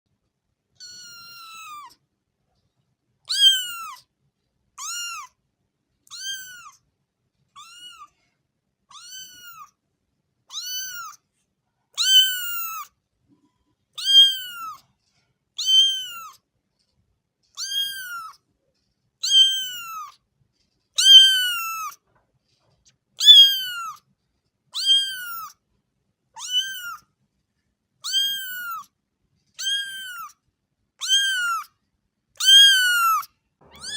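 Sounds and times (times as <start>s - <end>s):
kitten meowing: 0.8s - 2.0s, 3.3s - 4.0s, 4.8s - 5.3s, 6.1s - 6.8s, 7.6s - 8.1s, 8.9s - 9.7s, 10.5s - 11.2s, 12.0s - 12.9s, 14.0s - 14.8s, 15.6s - 16.4s, 17.6s - 18.4s, 19.2s - 20.2s, 21.0s - 22.0s, 23.2s - 24.0s, 24.8s - 25.6s, 26.4s - 27.0s, 28.0s - 28.9s, 29.6s - 30.4s, 31.0s - 31.7s, 32.4s - 33.9s.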